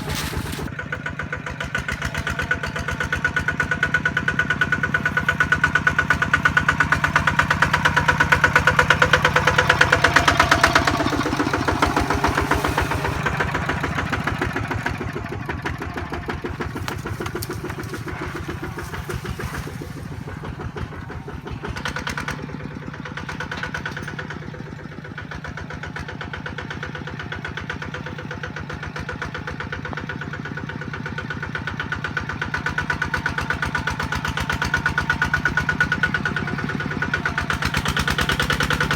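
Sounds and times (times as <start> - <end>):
diesel engine thudding: 0.0 - 24.4.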